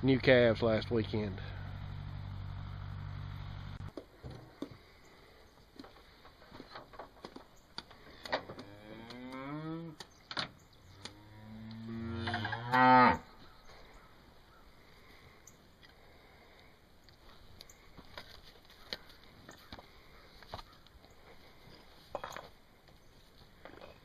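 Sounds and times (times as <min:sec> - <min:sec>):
steady low hum: 0:00.0 - 0:05.4
cattle mooing: 0:08.6 - 0:10.0, 0:11.0 - 0:13.3.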